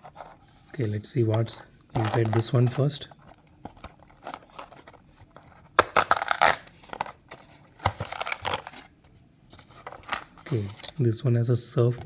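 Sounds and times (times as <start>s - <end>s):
packaging clicks and handling: 1.3s - 8.9s, 9.6s - 10.9s
packaging tearing and rustling: 5.6s - 8.9s.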